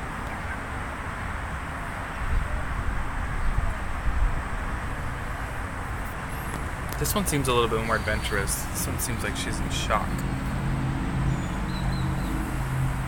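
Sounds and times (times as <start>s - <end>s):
wind buffeting microphone: 2.2s - 13.0s.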